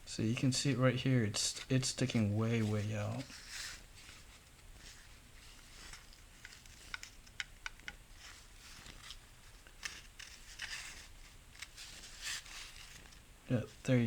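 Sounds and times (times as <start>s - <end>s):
soft rustles: 0.0s - 14.0s.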